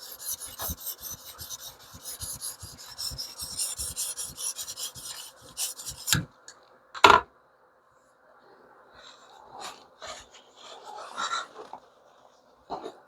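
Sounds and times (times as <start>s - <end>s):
stone rasping across knife edge: 0.0s - 6.3s.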